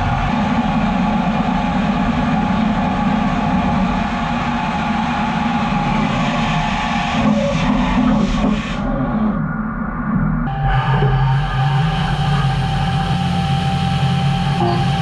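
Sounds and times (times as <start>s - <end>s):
metal-cutting machine whining hum: 10.5s - 15.0s.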